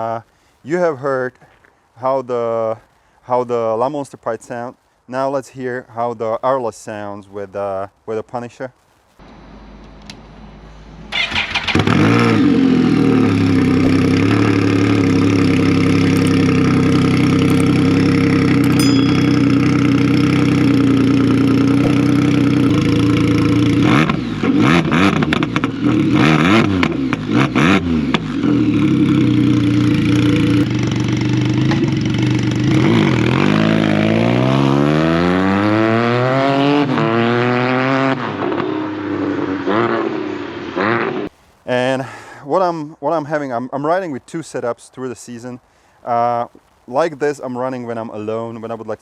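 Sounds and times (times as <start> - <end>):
three-wheeler engine revving: 10.4 - 41.3.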